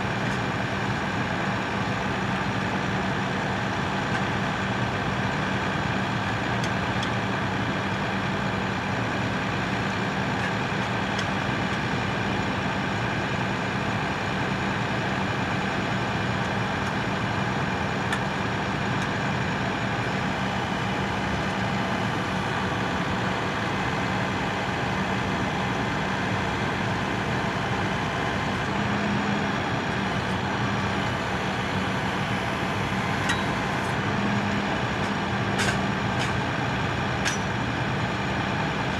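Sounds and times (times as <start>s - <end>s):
heavy engine idling: 0.0s - 38.9s.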